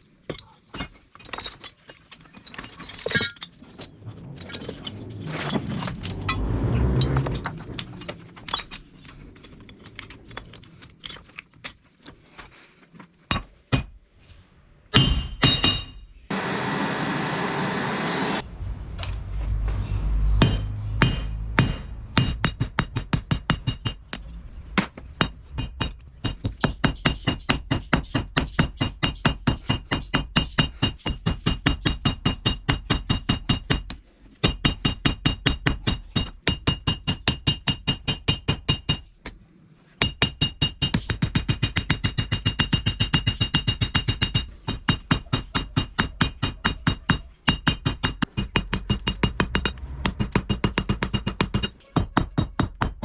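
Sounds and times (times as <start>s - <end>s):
hammer striking steel on anvil: 20.4s - 24.2s.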